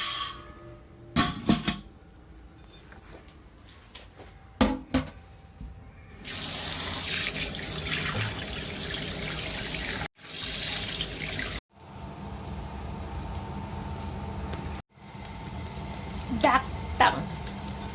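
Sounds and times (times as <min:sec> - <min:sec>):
kitchenware clinking: 0:00.0 - 0:01.9.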